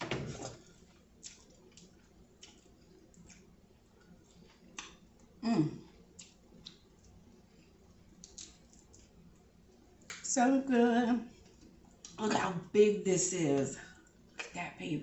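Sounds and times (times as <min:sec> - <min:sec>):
chewing with wet smacks: 0:00.8 - 0:10.2.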